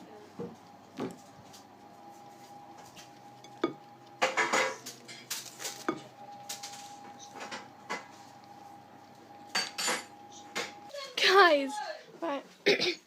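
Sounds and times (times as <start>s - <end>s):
dishes and utensils clinking: 3.0s - 8.6s, 9.3s - 10.9s.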